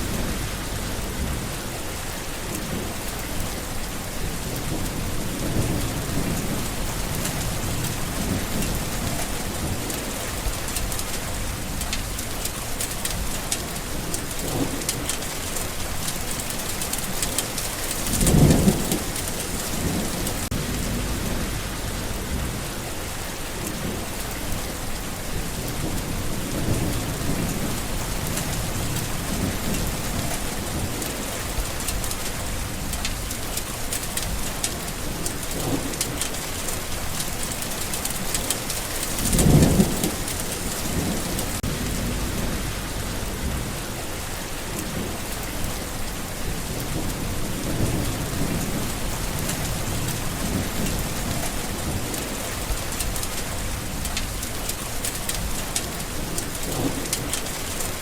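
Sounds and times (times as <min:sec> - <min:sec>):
rolling thunder: 0:00.0 - 0:01.8, 0:02.6 - 0:23.1, 0:23.7 - 0:54.7, 0:55.3 - 0:58.0
heavy rain: 0:00.0 - 0:58.0.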